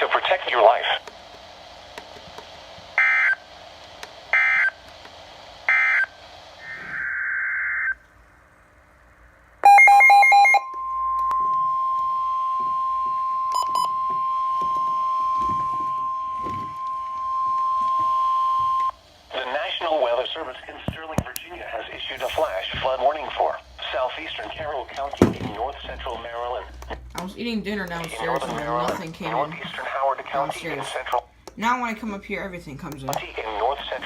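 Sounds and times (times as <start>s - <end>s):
pulsing beep: 9.6s - 18.9s
steady alarm tone: 9.6s - 19.0s.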